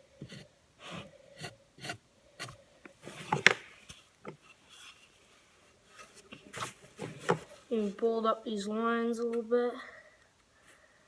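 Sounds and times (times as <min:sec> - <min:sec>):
pencil scratching on wood: 0:00.2 - 0:03.6.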